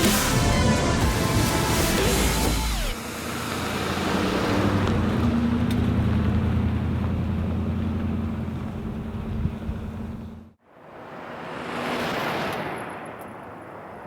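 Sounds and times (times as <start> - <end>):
pickup engine droning: 0.0 - 10.5.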